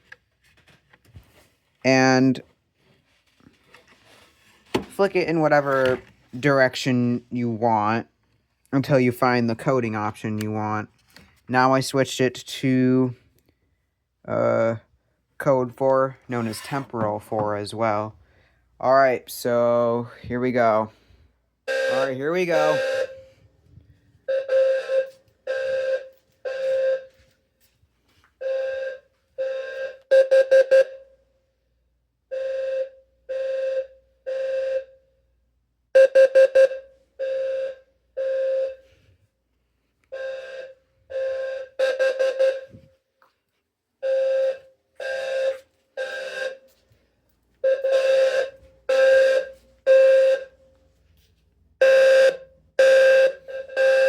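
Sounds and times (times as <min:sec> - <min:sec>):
fire alarm horn long beeps: 0:20.9 - 0:27.4, 0:28.4 - 0:31.3, 0:32.2 - 0:39.1, 0:40.1 - 0:43.0, 0:44.0 - 0:46.9, 0:47.6 - 0:50.8, 0:51.8 - 0:54.0
fire alarm horn short rapid beeps: 0:21.7 - 0:23.4, 0:24.3 - 0:27.2, 0:36.0 - 0:38.8, 0:40.2 - 0:42.8, 0:44.0 - 0:46.7, 0:47.6 - 0:50.5, 0:51.8 - 0:54.0.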